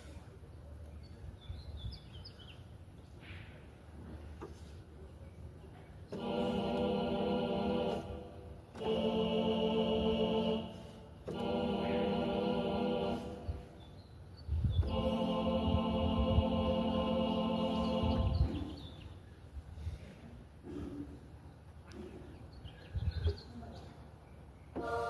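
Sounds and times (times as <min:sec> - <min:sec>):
keyboard choir chords: 0:06.0 - 0:19.2, 0:24.7 - 0:25.0.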